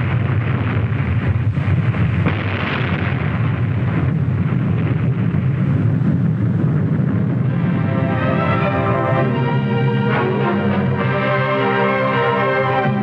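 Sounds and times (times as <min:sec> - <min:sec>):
explosion roar and rumble: 0:00.0 - 0:13.0.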